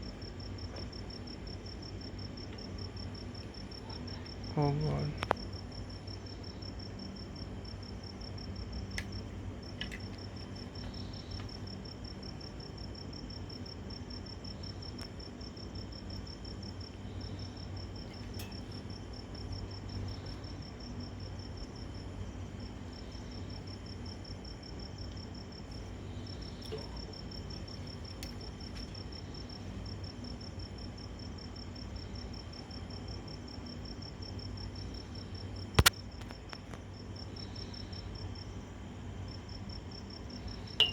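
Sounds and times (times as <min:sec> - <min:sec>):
crickets trilling: 0:00.0 - 0:40.9
low steady hum: 0:00.0 - 0:40.9
sharp click: 0:35.8 - 0:36.6.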